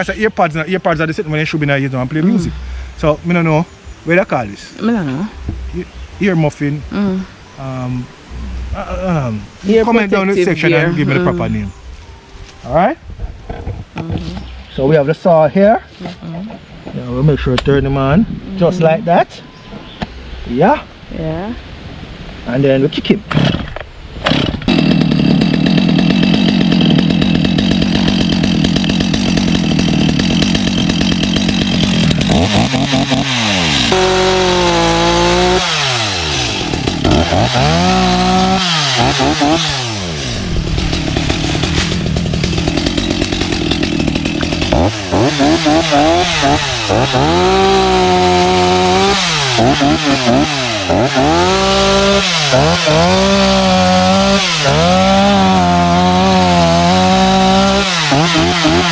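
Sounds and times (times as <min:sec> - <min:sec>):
chainsaw revving and cutting wood: 0:23.3 - 0:58.9.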